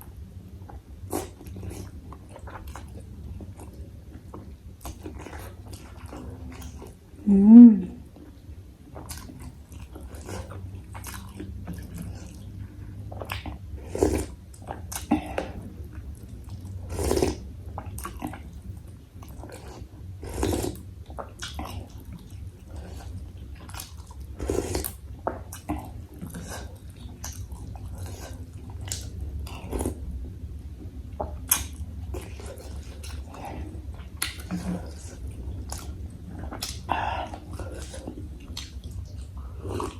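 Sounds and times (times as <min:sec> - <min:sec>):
low steady hum: 0:00.0 - 0:39.9
chewing and biting: 0:09.0 - 0:30.0, 0:31.1 - 0:39.9.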